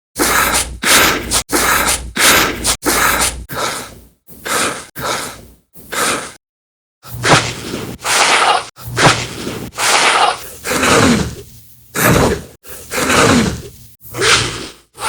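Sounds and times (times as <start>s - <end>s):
short human breaths and gasps: 0.2s - 6.4s.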